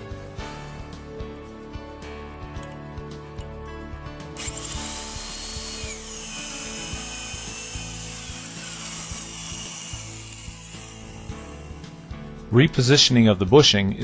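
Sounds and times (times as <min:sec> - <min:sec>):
background music: 0:00.0 - 0:14.0
electric drill boring into wood: 0:04.4 - 0:12.2.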